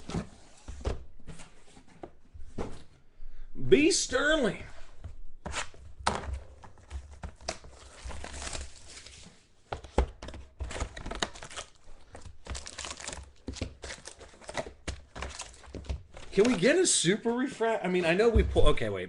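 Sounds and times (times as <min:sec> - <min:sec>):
wrapper tearing and crinkling: 0:08.2 - 0:09.1, 0:12.5 - 0:15.7.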